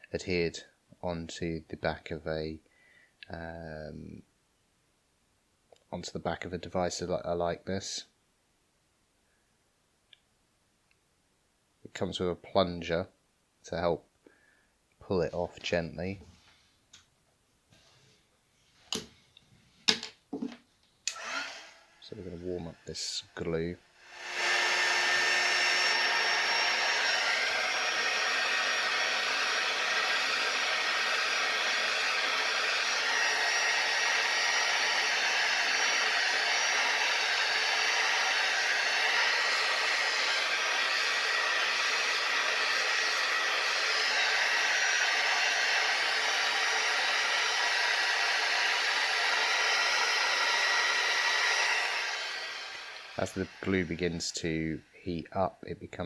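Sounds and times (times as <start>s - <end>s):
hot air gun blowing: 21.1s - 54.6s.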